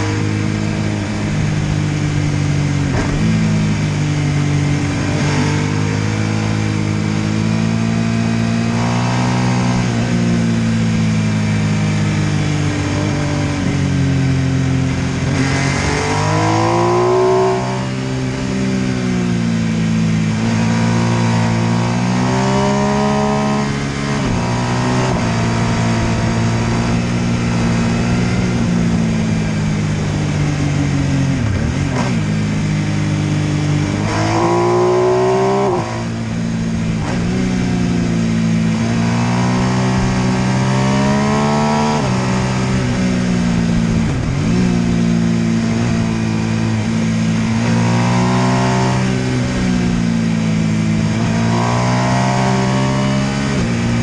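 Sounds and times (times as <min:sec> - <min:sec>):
motorcycle engine accelerating: 0:00.0 - 0:54.0.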